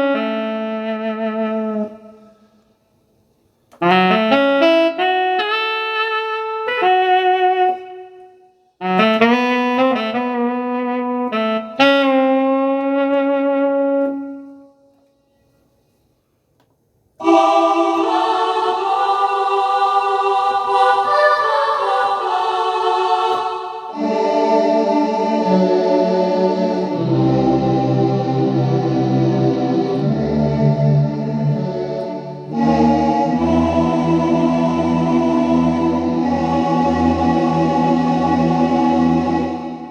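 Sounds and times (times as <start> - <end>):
synthesizer melody notes: 23.9 - 39.9
synthesizer sustained chords: 23.9 - 39.9.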